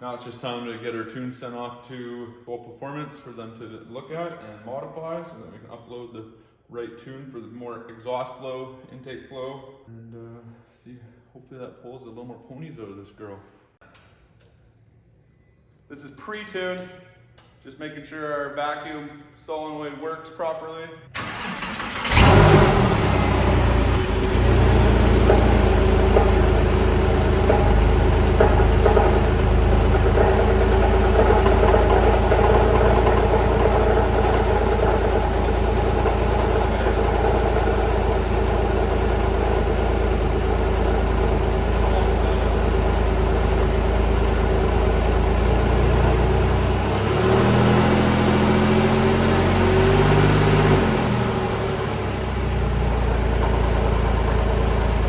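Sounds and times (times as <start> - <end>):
car engine idling: 21.2 - 55.0.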